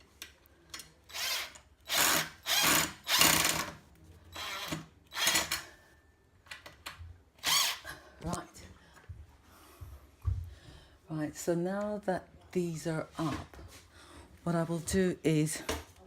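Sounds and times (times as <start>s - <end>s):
power drill driving screws: 1.1s - 3.8s, 4.4s - 5.6s, 7.4s - 7.8s.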